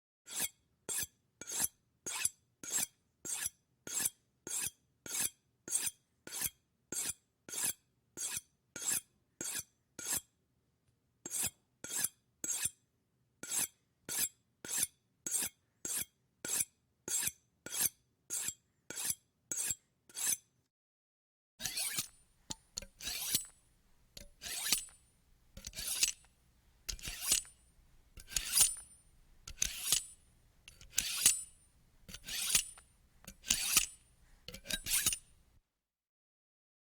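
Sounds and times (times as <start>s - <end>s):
knife sharpening scrapes: 18.4s - 20.4s, 21.6s - 35.5s.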